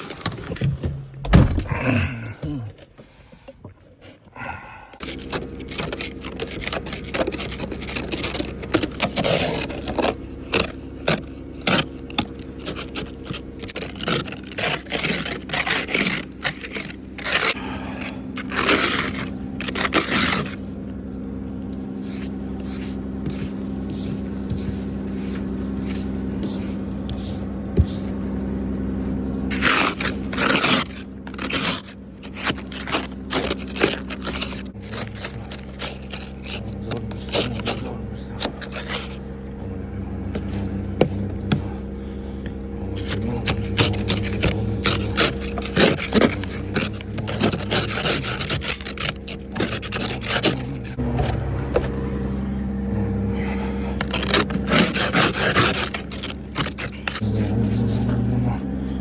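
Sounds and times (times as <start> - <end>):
scraping and rubbing: 3.8 - 59.0
low hum: 4.4 - 59.0.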